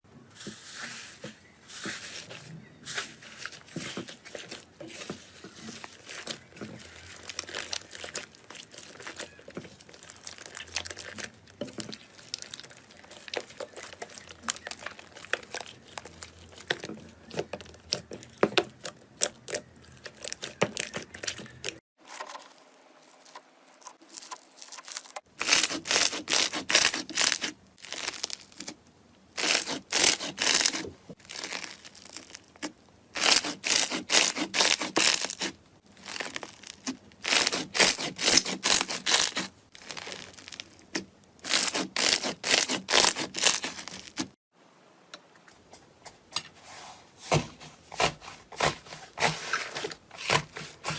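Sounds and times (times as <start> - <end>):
slime crackling and popping: 5.8 - 21.8, 23.3 - 28.8, 29.4 - 44.3.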